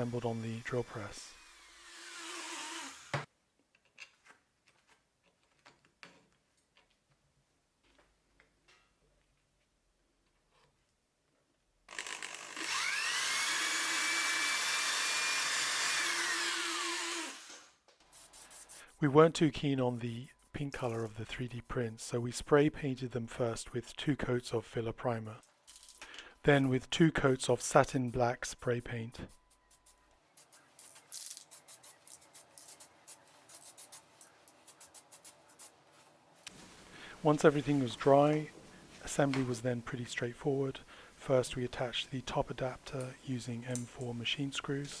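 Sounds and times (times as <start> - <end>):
drill press motor whine: 11.9 - 17.7.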